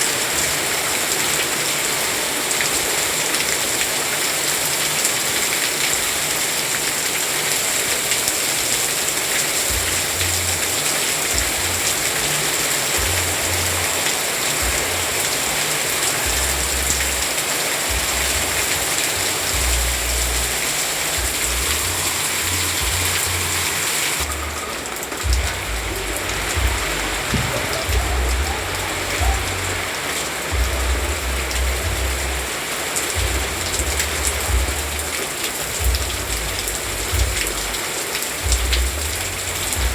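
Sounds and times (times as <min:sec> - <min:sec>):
louder raindrops: 0:00.0 - 0:39.9
steady rain falling: 0:00.0 - 0:39.9
low rumble: 0:21.2 - 0:29.9.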